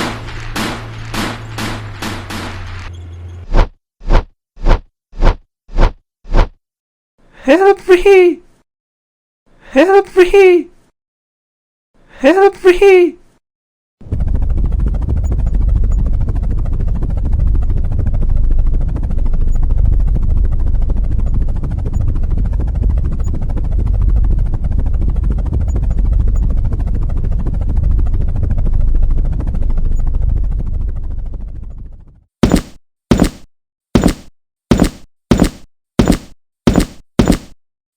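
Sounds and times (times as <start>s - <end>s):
low rumble of a motor: 0.0s - 3.5s, 14.0s - 32.2s.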